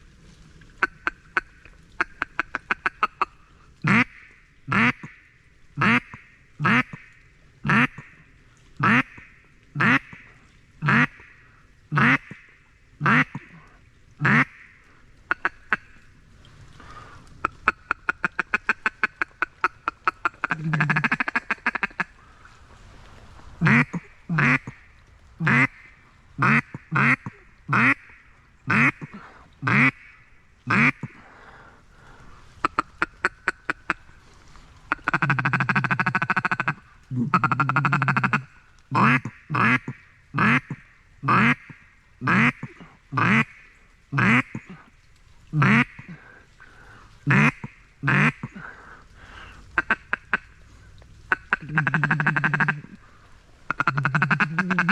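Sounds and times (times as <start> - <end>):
duck call quacks: 0.8 - 5.2, 5.8 - 7.1, 7.7 - 8.1, 8.8 - 10.2, 10.8 - 11.3, 11.9 - 12.4, 13.0 - 13.5, 14.2 - 14.7, 15.3 - 16.0, 17.4 - 22.1, 23.6 - 24.8, 25.4 - 31.2, 34.9 - 43.6, 44.2 - 44.8, 45.6 - 46.2, 47.3 - 48.6, 49.8 - 50.5, 51.3 - 53.0, 53.7 - 54.9.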